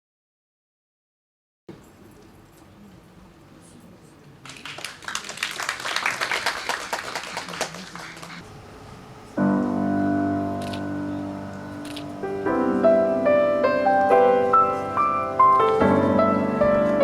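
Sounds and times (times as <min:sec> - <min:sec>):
held piano chord: 0:08.4 - 0:17.0.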